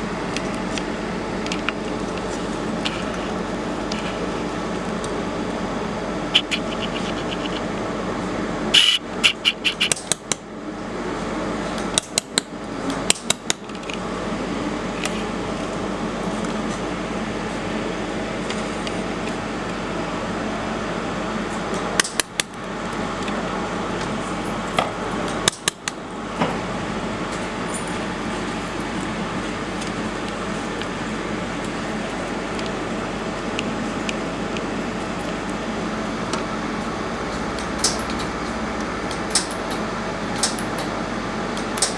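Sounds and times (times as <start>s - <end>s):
cooling fan whirring hum: 0.0s - 41.9s
sharp clicks and snaps: 8.8s - 10.4s, 37.6s - 38.3s, 39.1s - 39.8s.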